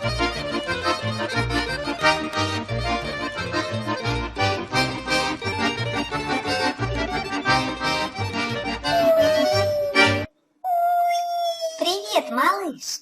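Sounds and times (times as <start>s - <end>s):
accordion music with bouncy bass: 0.0s - 10.3s.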